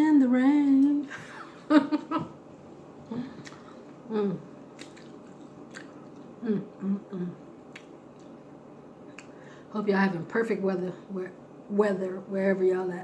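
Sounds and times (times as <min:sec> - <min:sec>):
wet lip smacks: 0:04.8 - 0:06.3, 0:07.7 - 0:08.4.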